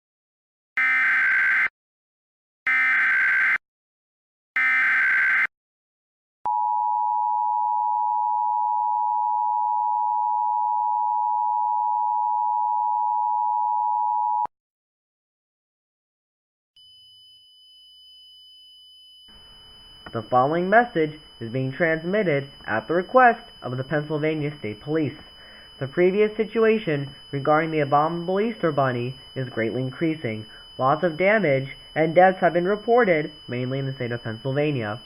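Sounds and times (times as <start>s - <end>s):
digital header data blasts: 19.4s - 35.0s.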